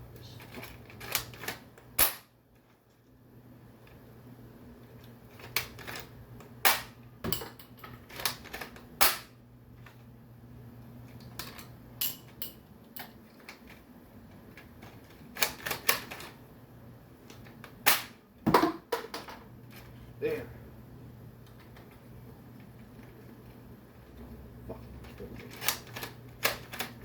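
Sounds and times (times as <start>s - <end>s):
low steady hum: 0.0s - 27.0s
plastic toy clicks and knocks: 0.5s - 2.3s, 5.0s - 10.0s, 11.2s - 16.4s, 25.1s - 27.0s.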